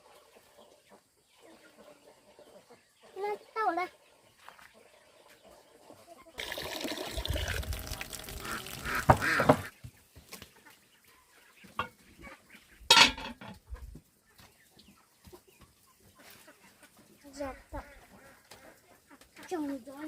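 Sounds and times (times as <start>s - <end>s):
poultry squawking: 8.2s - 9.8s, 16.1s - 19.7s.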